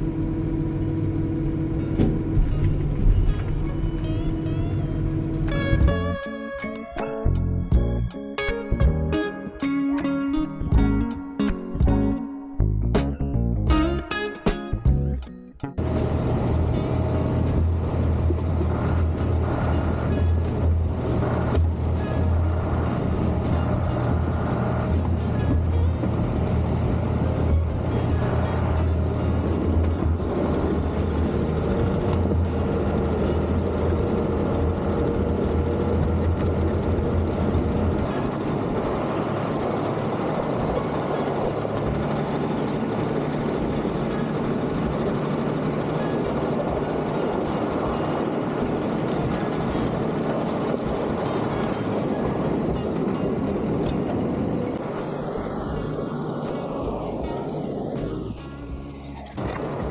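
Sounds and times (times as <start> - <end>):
heavy diesel engine rumbling: 0.0 - 6.2, 15.0 - 59.9.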